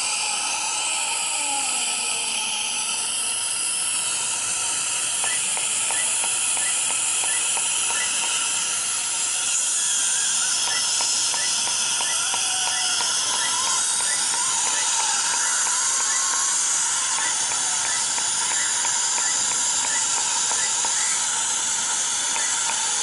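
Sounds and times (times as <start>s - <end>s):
loud steady hiss: 0.0s - 23.0s
faint regular ticks: 10.6s - 23.0s.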